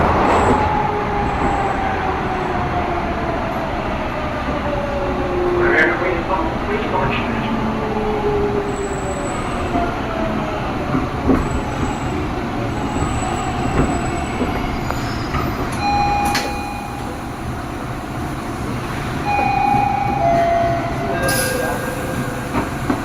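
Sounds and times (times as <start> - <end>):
subway wheels rumbling on rails: 0.0 - 23.0
brief squeal-like tone: 19.3 - 22.5.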